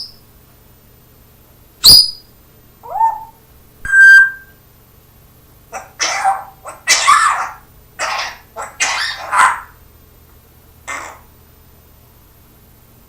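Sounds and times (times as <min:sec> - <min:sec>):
parrot whistling: 0:01.8 - 0:02.2, 0:02.8 - 0:04.6, 0:05.8 - 0:09.8
parrot chattering: 0:02.8 - 0:04.5, 0:05.7 - 0:09.8, 0:10.8 - 0:11.3
parrot squawking: 0:02.8 - 0:04.5, 0:05.7 - 0:09.8, 0:10.9 - 0:11.3
parrot imitating a cough: 0:05.8 - 0:09.7, 0:10.9 - 0:11.3.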